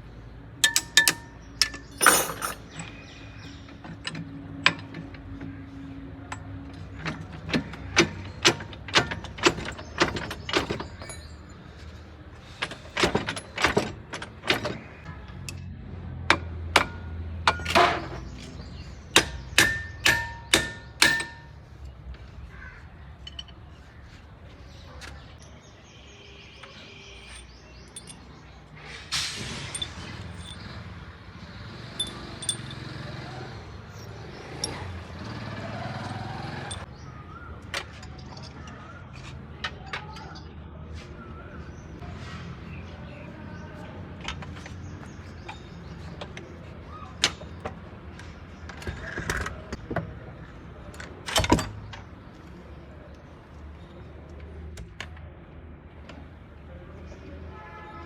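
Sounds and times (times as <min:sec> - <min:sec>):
metal taps and clinks: 0:00.6 - 0:11.9, 0:16.3 - 0:22.3, 0:23.1 - 0:23.9, 0:26.6 - 0:28.8, 0:29.5 - 0:30.9, 0:31.9 - 0:33.3, 0:36.6 - 0:36.9.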